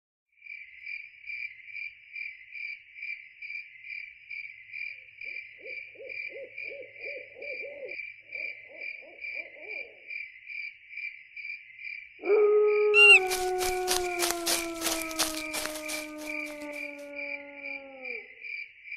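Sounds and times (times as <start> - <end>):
high pulsing chirping: 13.0 - 13.4.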